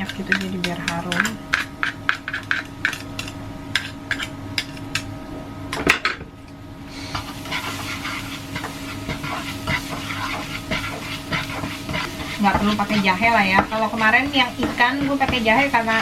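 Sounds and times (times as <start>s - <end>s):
utensil knocking and scraping wok: 0.0s - 5.1s, 7.0s - 16.0s
oil frying sizzle: 6.9s - 16.0s.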